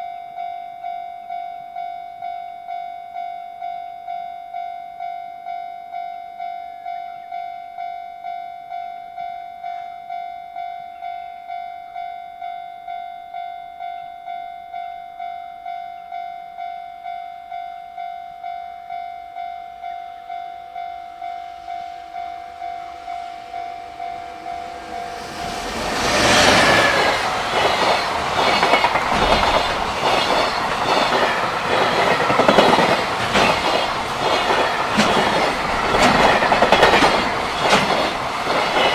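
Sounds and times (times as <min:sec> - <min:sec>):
freight train passing: 0:20.2 - 0:38.9
wheels clattering over rail joints: 0:26.5 - 0:38.9.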